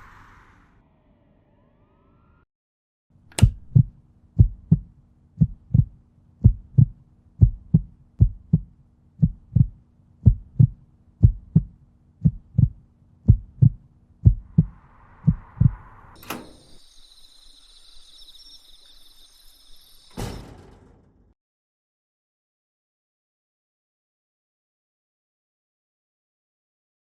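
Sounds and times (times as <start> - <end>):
heartbeat thumps: 3.4 - 15.9
steady low hum: 3.4 - 16.4.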